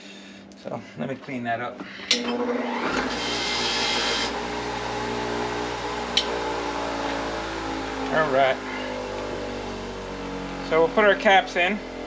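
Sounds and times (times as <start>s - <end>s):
power tool motor running: 2.1s - 9.4s.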